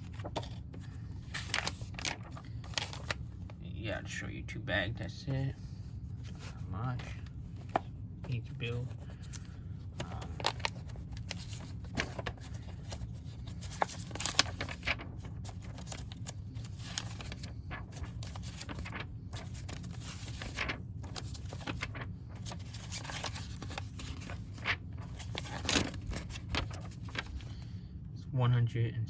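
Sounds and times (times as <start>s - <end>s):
steady low hum: 0.0s - 29.0s
plastic bags crinkling: 1.3s - 3.2s, 10.0s - 27.6s.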